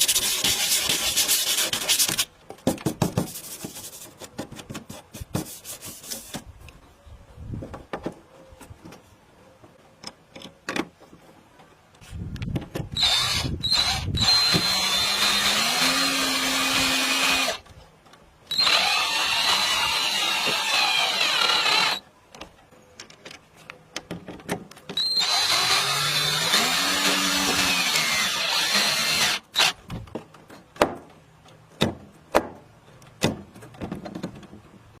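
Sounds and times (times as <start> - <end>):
power drill running: 13.0 - 17.6, 18.5 - 22.0, 25.0 - 29.8.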